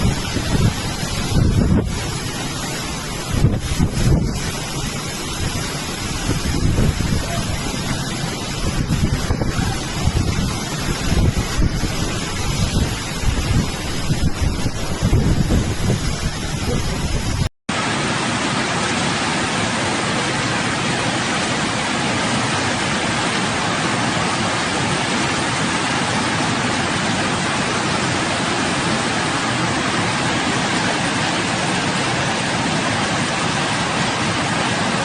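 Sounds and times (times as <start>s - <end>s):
wind buffeting microphone: 0.0s - 17.5s
heavy rain pouring: 0.0s - 35.0s.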